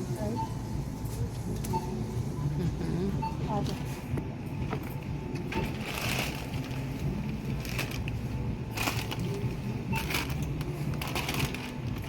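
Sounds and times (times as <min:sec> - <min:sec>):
checkout beep: 0:00.0 - 0:06.2, 0:08.4 - 0:12.0
low store hum: 0:00.0 - 0:12.0
items clattering: 0:04.7 - 0:12.0.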